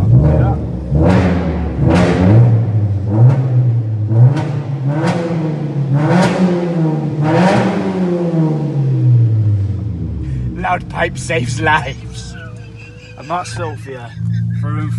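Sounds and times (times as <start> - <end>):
car engine revving: 0.0 - 14.9.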